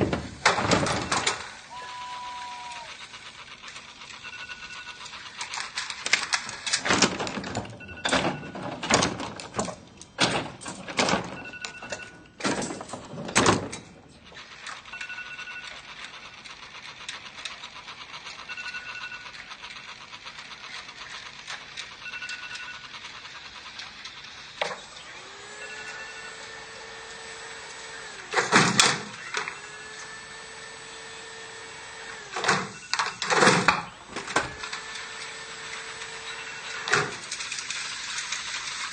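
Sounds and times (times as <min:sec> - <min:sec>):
loud noisy bursts: 0:00.0 - 0:03.6
steady alarm tone: 0:01.7 - 0:05.4, 0:14.3 - 0:28.2, 0:29.1 - 0:33.3, 0:35.4 - 0:36.9
two-tone alarm beep: 0:04.2 - 0:05.1, 0:07.8 - 0:08.7, 0:11.3 - 0:12.4, 0:14.9 - 0:15.8, 0:18.5 - 0:19.4, 0:22.0 - 0:22.9, 0:25.6 - 0:26.4, 0:36.3 - 0:36.9.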